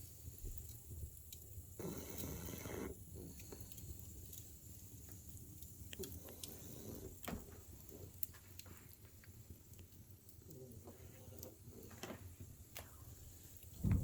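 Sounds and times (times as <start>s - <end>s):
small clicks and snuffles: 0.3s - 13.8s
dog snoring faintly: 1.8s - 3.4s.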